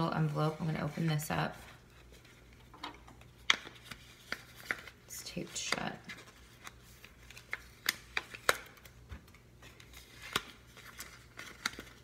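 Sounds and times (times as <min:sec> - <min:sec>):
envelope clicks and crackles: 0:03.2 - 0:12.0.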